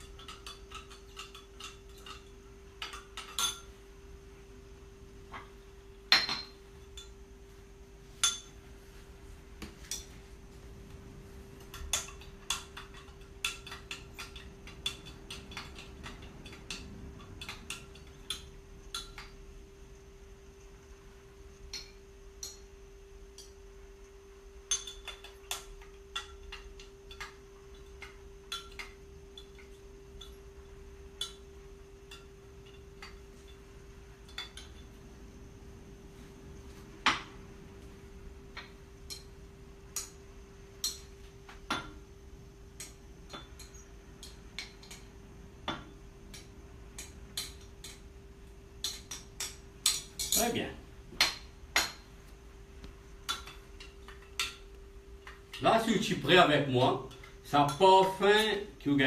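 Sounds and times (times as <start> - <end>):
utensils clinking against pot: 0.0 - 3.8, 6.1 - 7.2, 11.6 - 19.4, 24.6 - 30.5, 48.8 - 52.1
steady low hum: 0.0 - 59.0.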